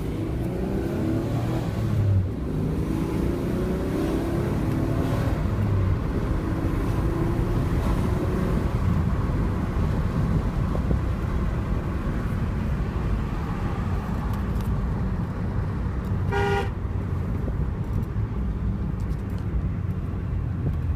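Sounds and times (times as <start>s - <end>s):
car engine rumbling: 0.0s - 20.9s
car horn toot: 16.3s - 16.8s.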